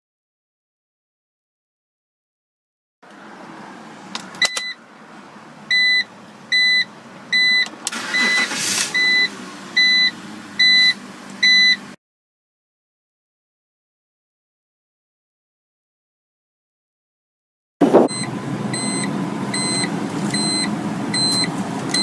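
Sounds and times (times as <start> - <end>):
car warning chime beeping: 4.4 - 4.8, 5.7 - 11.9, 18.1 - 22.0.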